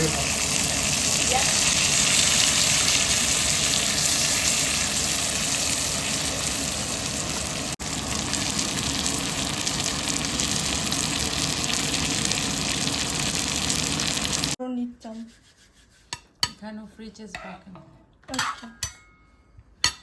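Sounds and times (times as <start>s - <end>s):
food sizzling in a frying pan: 0.0s - 14.6s.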